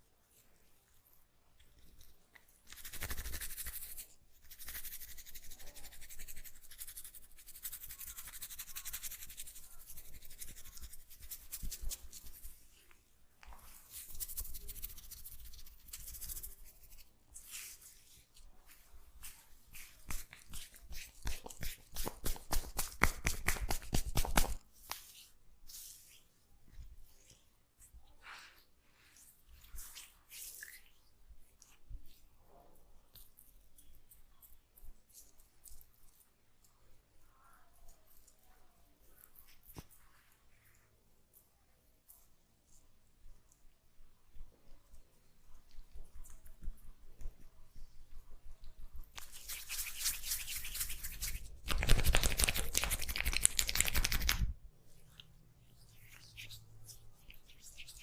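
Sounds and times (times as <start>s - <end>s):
hands rubbing hair and scalp: 1.8s - 32.2s, 44.3s - 58.0s.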